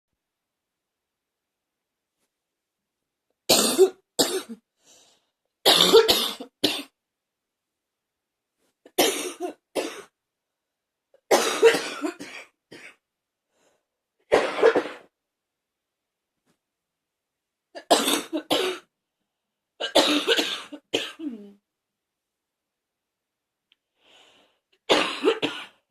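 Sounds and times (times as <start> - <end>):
person coughing: 3.5 - 4.6, 5.7 - 6.9, 8.9 - 10.1, 11.3 - 13.0, 14.3 - 15.1, 17.8 - 18.9, 19.8 - 21.6, 24.9 - 25.8.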